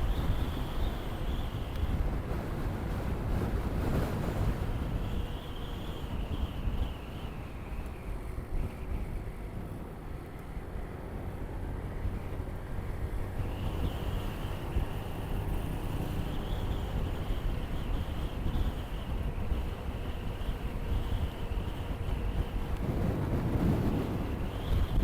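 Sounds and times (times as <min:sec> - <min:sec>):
wind rushing over microphone: 0:00.0 - 0:25.0.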